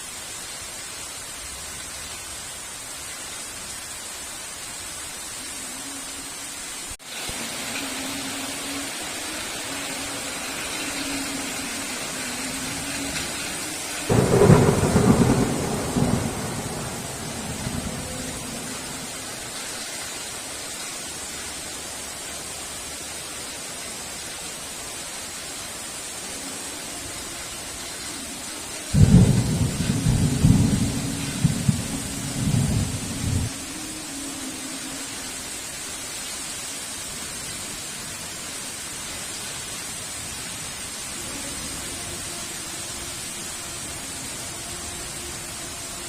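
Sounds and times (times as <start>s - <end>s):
heavy rain falling: 0.0s - 46.0s
thunder rumble: 8.9s - 19.8s, 28.3s - 34.0s.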